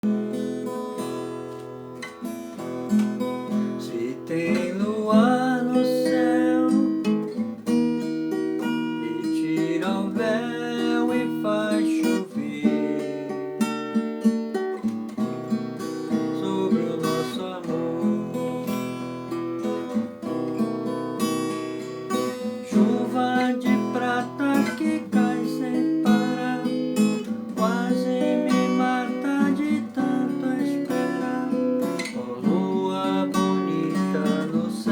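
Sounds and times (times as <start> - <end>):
gliding guitar melody: 0.0 - 34.9
strummed acoustic guitar: 0.0 - 34.9.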